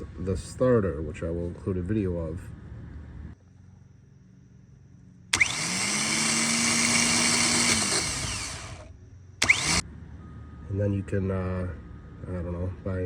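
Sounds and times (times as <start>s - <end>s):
starter motor whirring: 5.3s - 9.8s.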